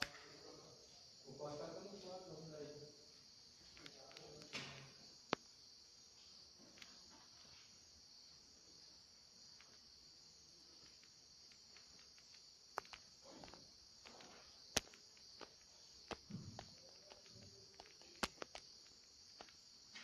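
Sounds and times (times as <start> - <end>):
sharp clicks: 0.0 - 0.3, 3.7 - 5.5, 10.8 - 20.0
crickets chirping: 0.0 - 20.0.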